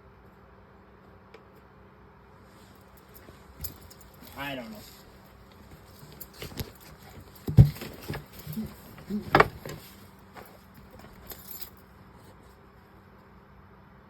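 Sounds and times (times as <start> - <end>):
knocks and rattles: 5.6 - 11.7.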